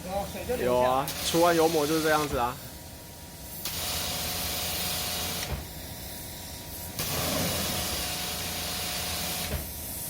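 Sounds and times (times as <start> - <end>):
high-pressure water spraying: 1.0 - 2.5, 3.6 - 5.6, 6.8 - 9.7.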